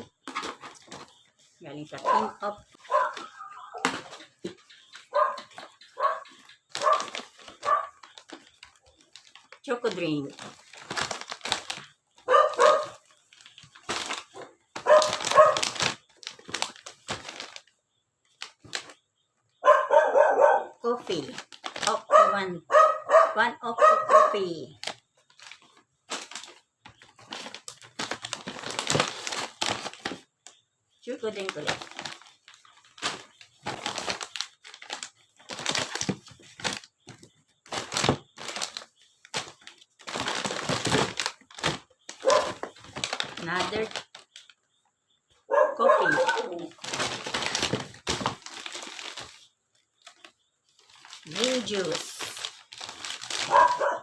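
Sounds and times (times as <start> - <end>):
plastic packaging crinkling: 0.0 - 19.0, 21.0 - 22.3, 24.5 - 44.8, 45.8 - 54.0
rustling and handling noises: 0.0 - 19.5, 21.0 - 22.3, 24.2 - 54.0
dog barking: 2.0 - 3.9, 5.1 - 8.0, 12.2 - 13.0, 14.8 - 15.8, 19.6 - 20.8, 22.0 - 24.6, 42.2 - 42.6, 45.4 - 46.8, 53.4 - 54.0.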